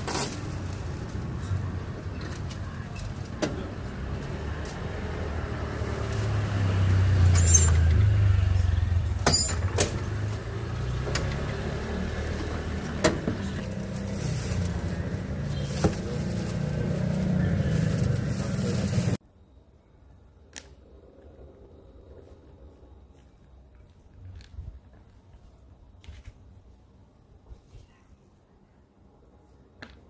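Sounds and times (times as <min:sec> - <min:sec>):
low vehicle rumble: 0:00.0 - 0:19.2.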